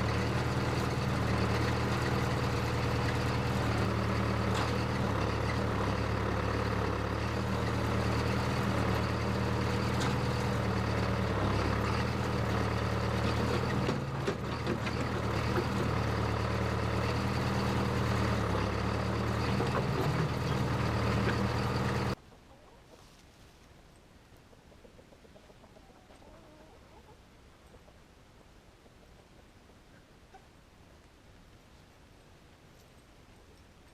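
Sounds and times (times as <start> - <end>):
backhoe engine running: 0.0 - 22.2.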